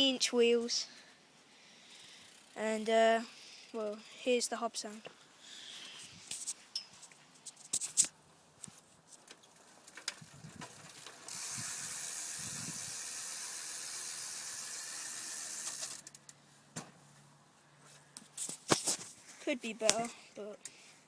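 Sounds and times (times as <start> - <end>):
bicycle freewheel hub ticking: 2.2 - 2.9, 9.8 - 16.4.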